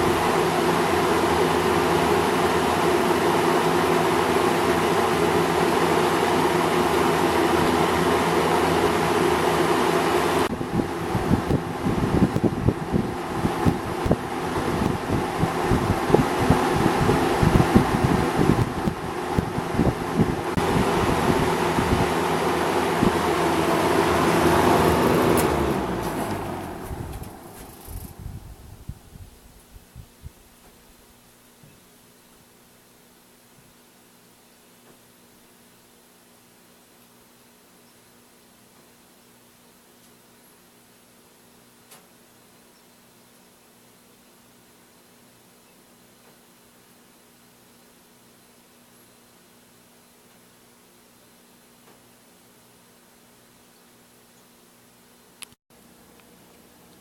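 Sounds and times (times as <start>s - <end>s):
box fan running: 0.0s - 42.5s.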